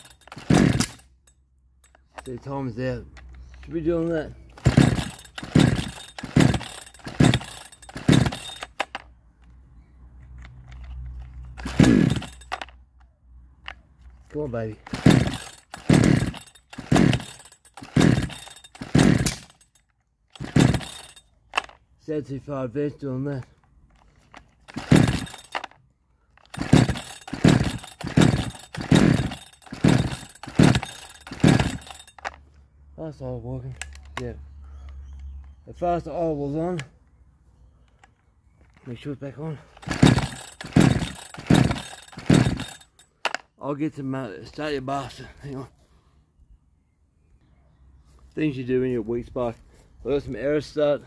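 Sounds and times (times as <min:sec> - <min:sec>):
engine turning over without firing: 0:00.0 - 0:01.2, 0:04.0 - 0:09.1, 0:10.6 - 0:12.8, 0:14.8 - 0:19.7, 0:20.3 - 0:21.8, 0:24.3 - 0:25.8, 0:26.4 - 0:32.4, 0:39.7 - 0:43.4
chainsaw recoil starter cord pulls: 0:00.0 - 0:09.6, 0:10.2 - 0:12.8, 0:13.6 - 0:21.8, 0:23.3 - 0:32.4, 0:33.6 - 0:34.3, 0:39.6 - 0:43.5.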